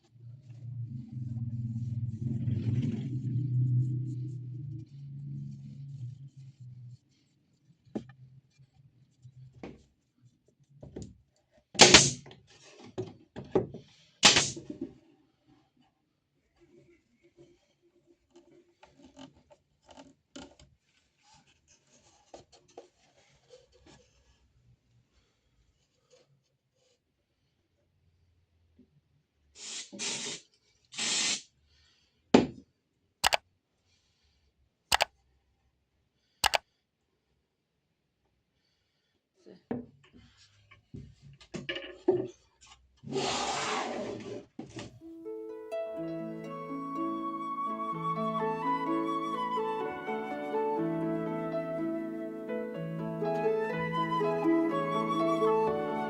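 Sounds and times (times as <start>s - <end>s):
short scraping hiss: 29.6s - 31.5s.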